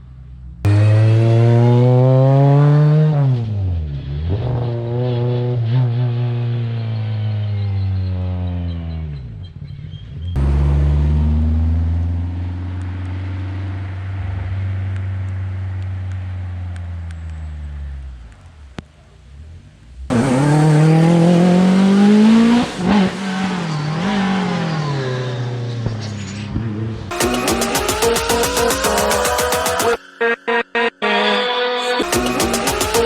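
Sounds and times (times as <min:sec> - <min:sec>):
rally car engine droning: 0:00.0 - 0:30.0
car engine revving hard: 0:00.7 - 0:06.6, 0:20.0 - 0:25.6.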